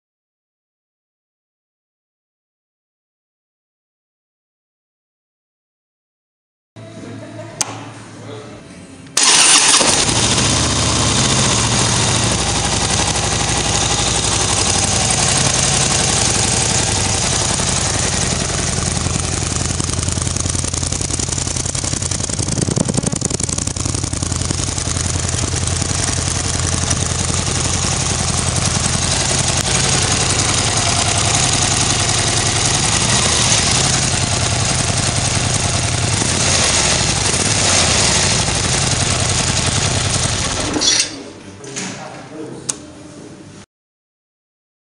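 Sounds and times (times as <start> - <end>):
motorcycle engine idling: 9.2 - 40.7.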